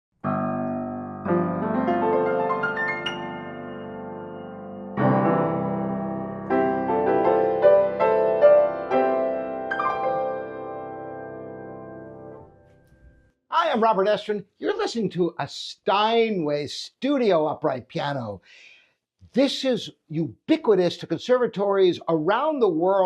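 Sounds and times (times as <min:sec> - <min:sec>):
upright piano playing: 0:00.2 - 0:12.7.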